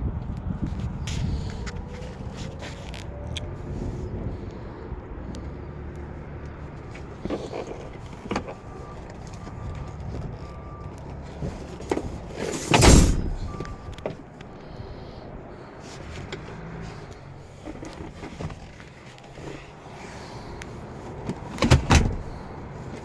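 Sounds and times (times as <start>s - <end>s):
car door shutting thud: 12.5s - 14.2s, 21.6s - 22.4s
short electronic beeps: 13.2s - 13.9s.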